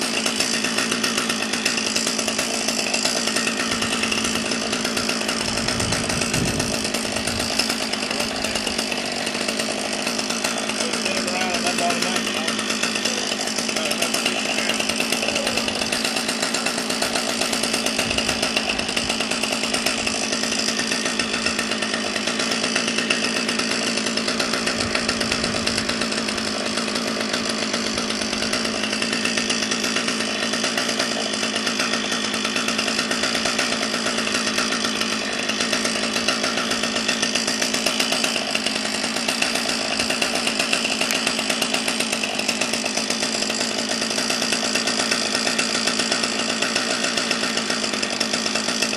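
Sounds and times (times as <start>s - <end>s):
chainsaw running at high speed: 0.0s - 48.9s.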